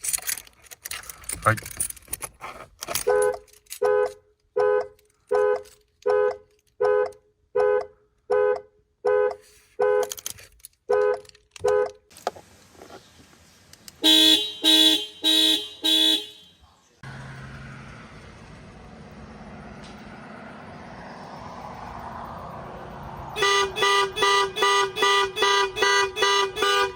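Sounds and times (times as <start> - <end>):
car alarm horn honks: 14.0 - 16.7, 23.4 - 26.9
lower-pitched horn honking: 14.0 - 17.5, 23.4 - 26.9.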